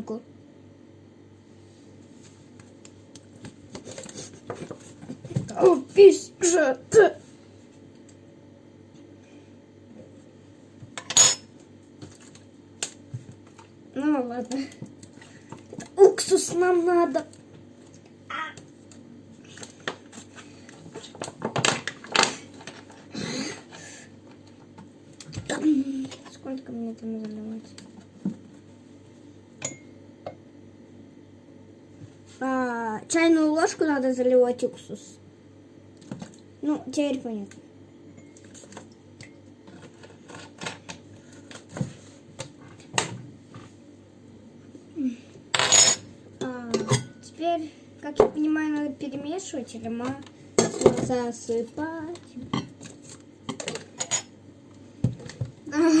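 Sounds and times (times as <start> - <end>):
kitchen utensils clinking: 11.0 - 11.5, 45.6 - 46.0, 53.5 - 54.3.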